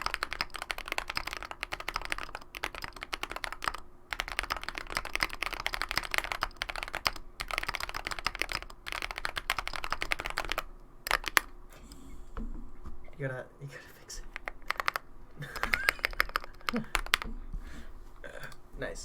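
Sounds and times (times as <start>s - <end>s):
fast typing on mechanical keyboard: 0.0s - 11.5s, 14.2s - 17.4s.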